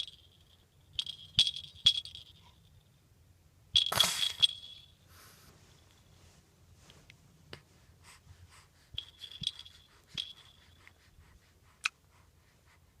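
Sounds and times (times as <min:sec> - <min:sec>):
bell toy jingling: 0:03.8 - 0:05.0, 0:09.0 - 0:10.9.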